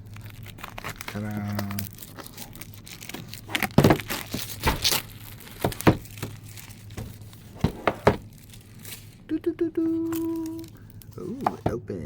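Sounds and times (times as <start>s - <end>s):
plastic shrink-wrap crinkling: 0.0s - 11.4s
cardboard box being handled: 3.0s - 8.5s.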